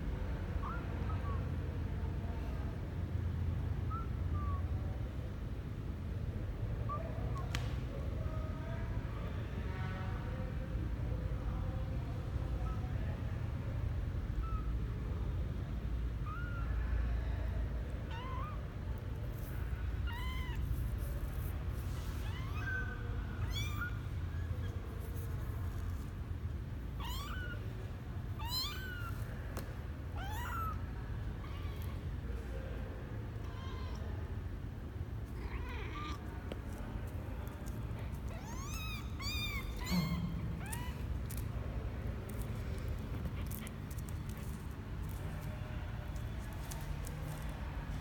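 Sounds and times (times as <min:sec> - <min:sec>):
kitten mewing: 0:19.3 - 0:21.4, 0:22.2 - 0:25.6, 0:27.0 - 0:27.7, 0:28.3 - 0:29.3, 0:30.2 - 0:30.8, 0:35.2 - 0:36.8, 0:37.4 - 0:41.6, 0:42.3 - 0:45.2.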